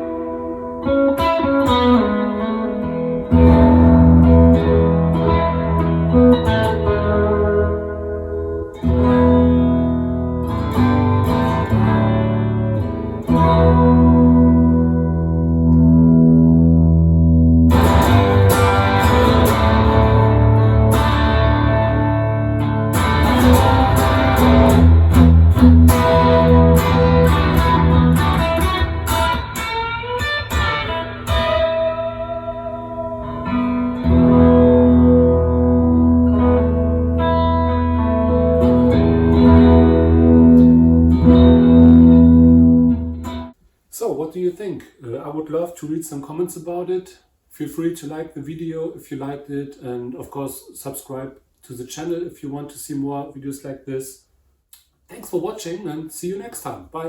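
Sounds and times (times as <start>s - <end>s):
electric guitar through an amp: 0.0s - 43.6s.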